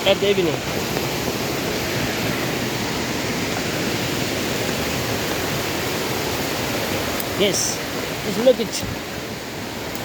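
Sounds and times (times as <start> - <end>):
stream water rushing: 0.0 - 10.0.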